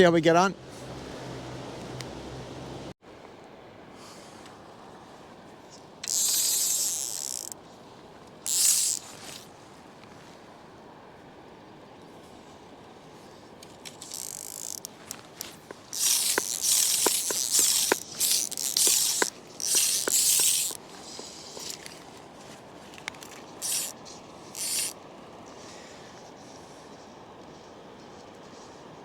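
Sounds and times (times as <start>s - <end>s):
fly reel ratchet buzzing: 6.0s - 7.6s, 8.4s - 9.4s, 13.8s - 22.0s, 23.0s - 25.0s
sharp reel clicks: 6.0s - 7.6s, 8.4s - 9.5s, 13.6s - 22.1s, 22.9s - 25.0s.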